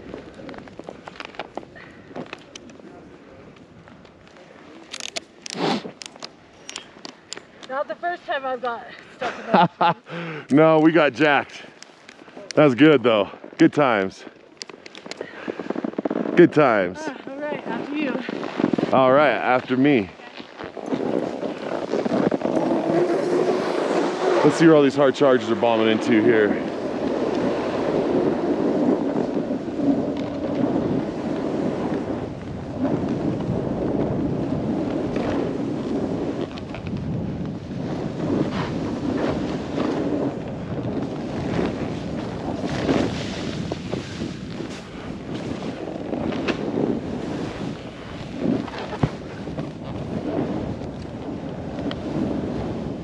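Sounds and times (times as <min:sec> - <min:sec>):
wind on camera microphone: 0:15.0 - 0:53.0
snowboard hissing through snow: 0:20.9 - 0:24.8, 0:41.0 - 0:50.8.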